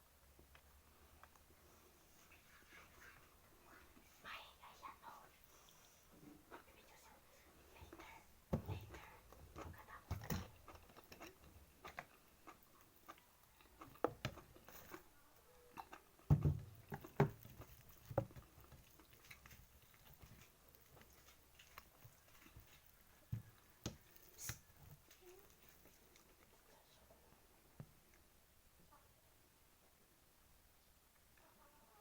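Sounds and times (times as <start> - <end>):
person chewing and smacking: 8.9 - 15.1, 15.7 - 26.6.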